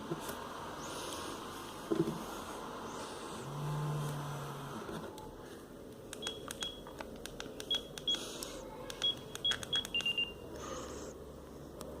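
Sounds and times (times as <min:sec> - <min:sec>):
high key beeps: 0:06.2 - 0:06.9, 0:07.7 - 0:08.2, 0:09.0 - 0:10.4.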